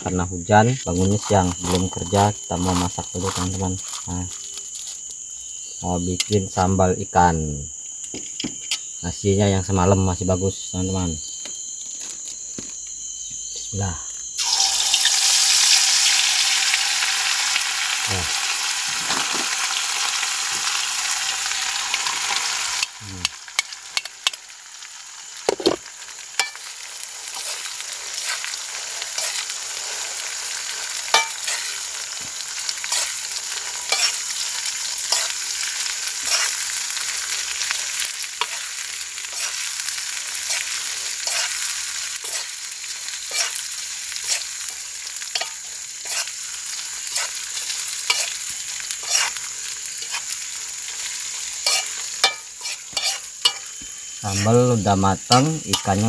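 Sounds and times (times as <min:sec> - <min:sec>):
food sizzling in hot oil: 0:00.0 - 0:56.0
utensil scraping a pan: 0:51.6 - 0:53.7.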